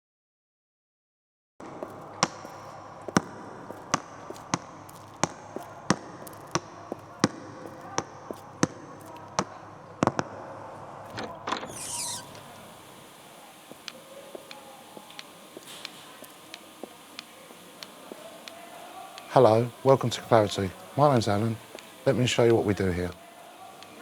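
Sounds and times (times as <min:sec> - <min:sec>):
short high squeak: 0:11.5 - 0:12.6.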